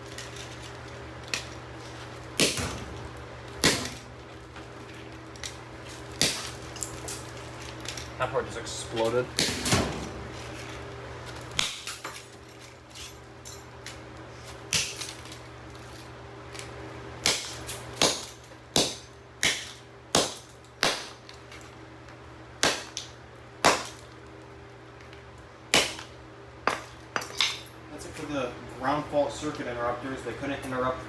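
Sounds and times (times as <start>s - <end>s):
hammer smashing plastic: 2.4s - 2.8s, 3.6s - 4.1s, 6.2s - 6.6s, 22.6s - 24.1s.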